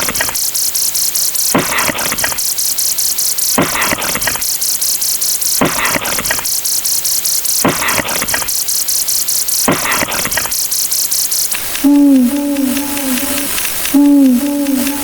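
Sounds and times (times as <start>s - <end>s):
fast even clicking: 0.0s - 15.0s.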